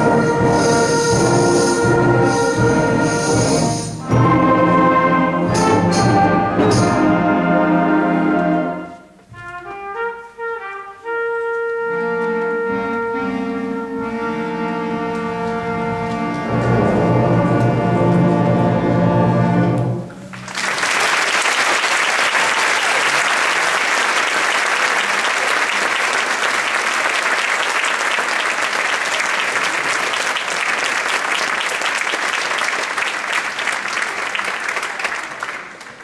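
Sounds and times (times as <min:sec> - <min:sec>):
audience applause: 0:20.3 - 0:36.0.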